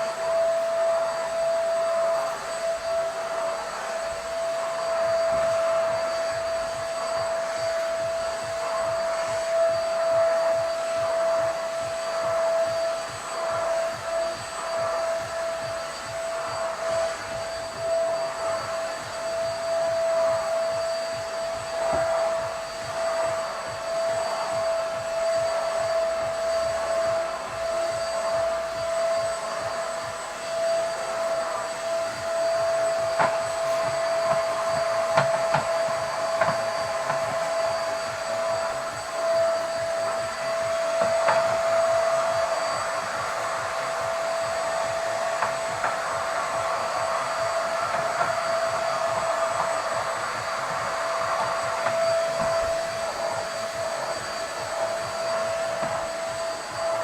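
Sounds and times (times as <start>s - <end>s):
vacuum cleaner motor whine: 0.0s - 57.0s.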